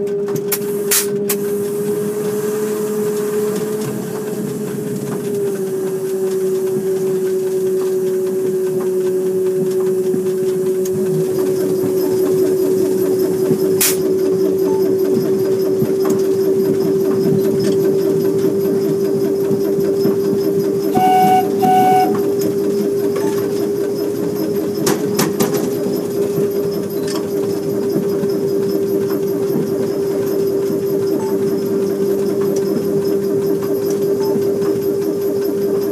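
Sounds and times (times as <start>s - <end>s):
wheels on rails: 0.0s - 35.9s
train motor whine: 0.5s - 23.9s
train horn toots: 20.9s - 22.5s.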